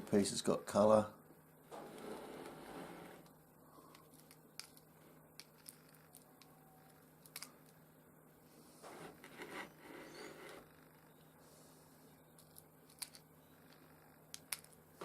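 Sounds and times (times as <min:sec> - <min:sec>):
ruler scraping on surface: 0:01.8 - 0:03.3, 0:08.8 - 0:10.6.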